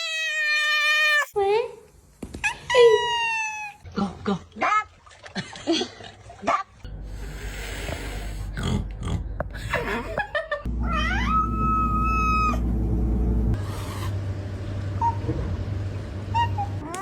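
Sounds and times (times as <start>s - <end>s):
cat yowling: 0.0s - 1.3s, 10.8s - 12.6s
low hum: 6.9s - 17.0s.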